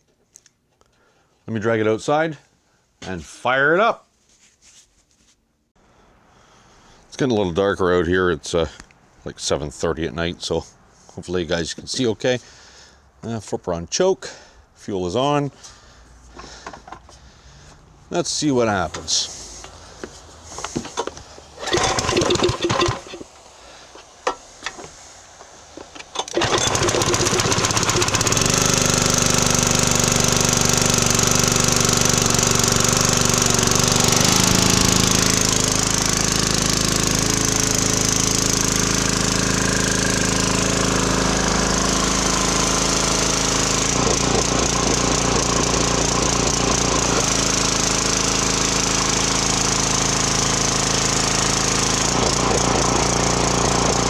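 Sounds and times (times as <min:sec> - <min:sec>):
small gas engine running: 0:19.5 - 0:54.0
pull-start noises: 0:20.6 - 0:23.3, 0:25.8 - 0:54.0.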